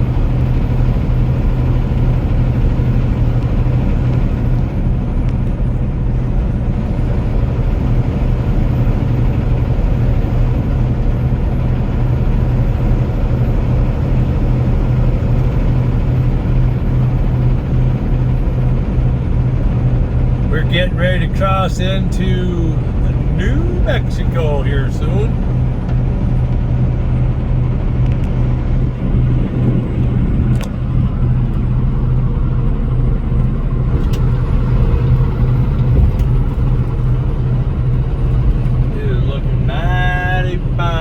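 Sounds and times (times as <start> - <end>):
vehicle engine and road noise: 0.0 - 41.0.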